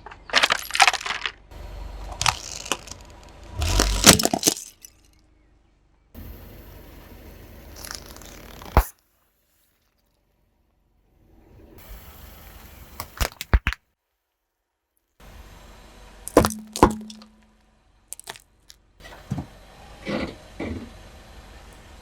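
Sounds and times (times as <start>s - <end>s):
objects cracking under car tyre: 0.0s - 5.2s, 7.8s - 8.9s, 16.3s - 17.4s, 18.1s - 18.8s.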